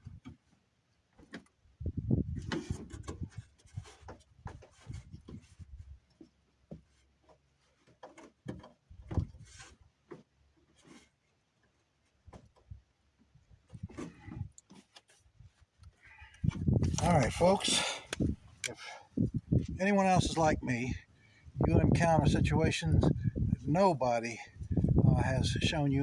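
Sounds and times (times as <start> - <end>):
thuds and rubbing: 2.3 - 11.1.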